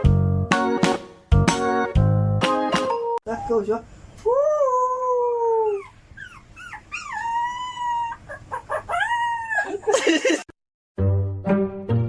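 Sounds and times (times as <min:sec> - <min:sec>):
dog howling: 0:06.7 - 0:09.8.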